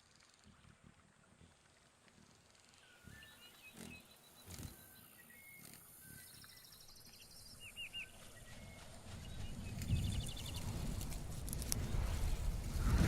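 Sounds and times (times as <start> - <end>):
birds calling: 2.9 - 8.8.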